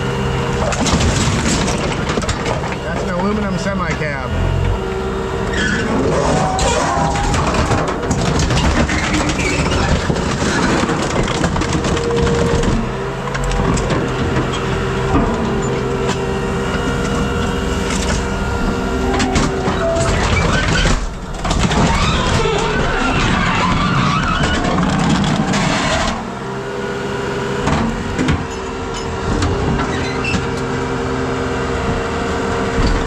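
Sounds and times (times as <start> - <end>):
hydraulic crusher running: 0.0 - 33.0
metal cracking and crunching: 0.6 - 3.1, 5.8 - 26.6.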